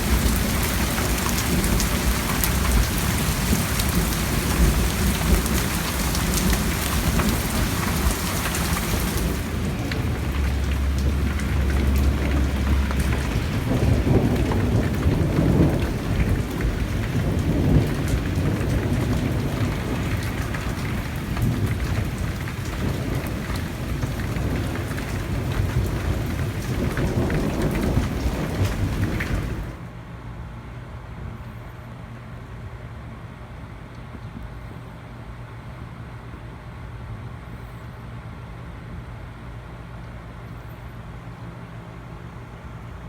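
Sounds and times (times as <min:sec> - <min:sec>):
thunder rumbling: 0:00.0 - 0:29.8
heavy rain pouring: 0:00.0 - 0:29.9.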